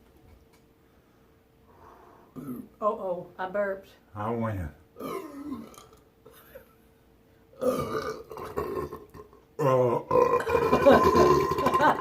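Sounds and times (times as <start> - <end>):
person belching loudly: 2.4 - 2.7, 5.0 - 6.0, 7.6 - 12.0.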